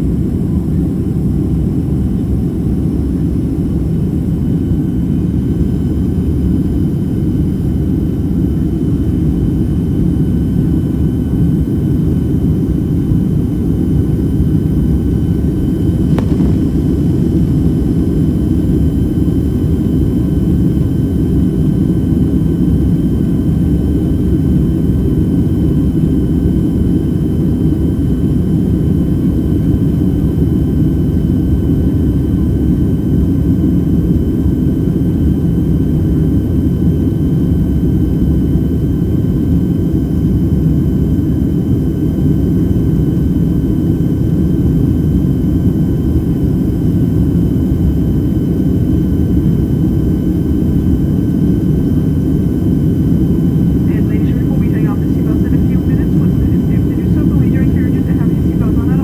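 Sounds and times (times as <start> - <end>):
airplane cabin engine roar: 0.0 - 59.0
faint high whine: 15.4 - 20.8, 52.9 - 59.0.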